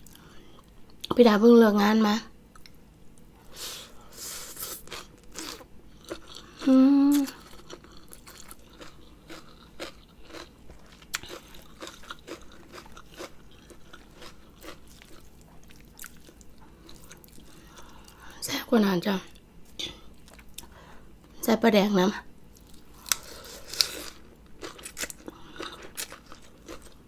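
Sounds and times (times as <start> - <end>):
chewing and biting food: 4.7 - 18.2, 22.6 - 27.0.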